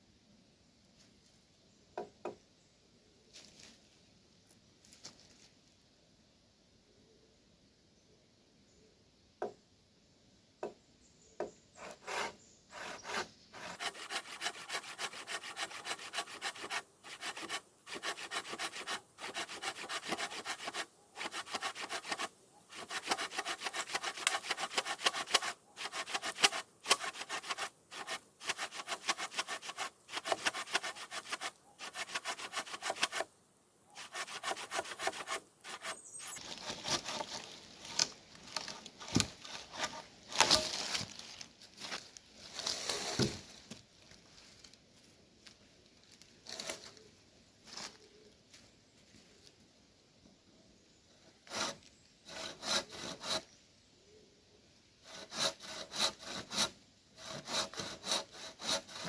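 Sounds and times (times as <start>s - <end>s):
saw cutting wood: 11.8s - 33.3s, 34.0s - 38.0s, 51.5s - 53.5s, 55.0s - 59.0s.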